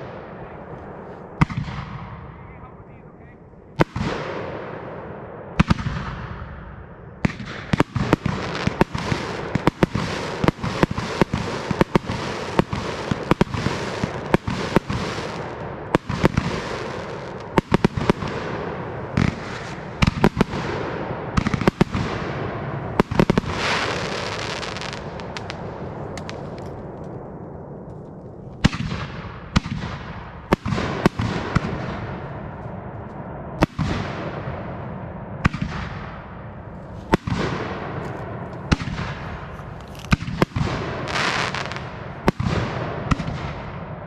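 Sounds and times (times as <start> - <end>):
fireworks bangs: 0.0 - 44.0
fireworks hissing and crackling: 7.3 - 27.2, 36.7 - 43.4.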